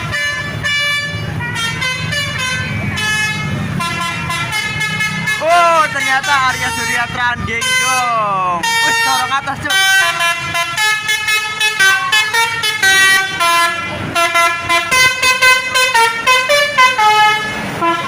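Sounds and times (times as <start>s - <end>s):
multi-tone musical bus horn: 0.0s - 18.0s.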